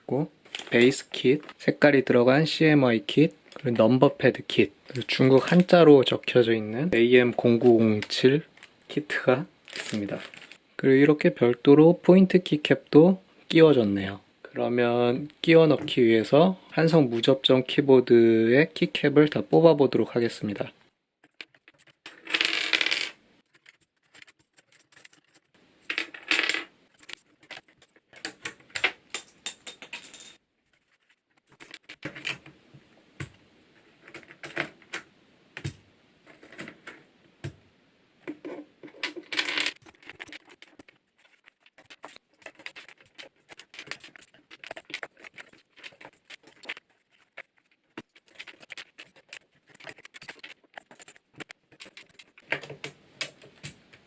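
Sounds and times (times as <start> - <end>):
keycaps clattering together: 31.5 - 32.5, 38.4 - 54.0.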